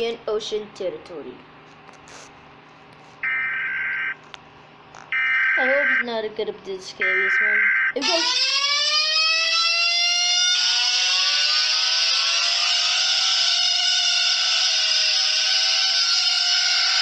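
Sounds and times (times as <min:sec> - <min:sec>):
electronic alarm tone: 0:03.2 - 0:04.2, 0:05.2 - 0:06.1, 0:07.0 - 0:17.0.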